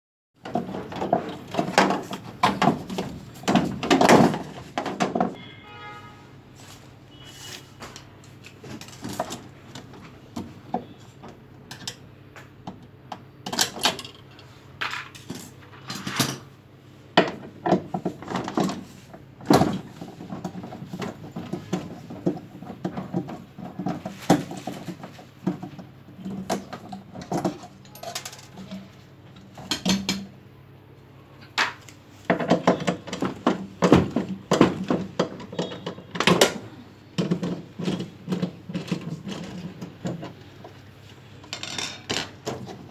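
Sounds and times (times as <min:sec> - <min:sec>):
metal parts and tools clinking: 0:26.5 - 0:28.9, 0:41.4 - 0:42.8.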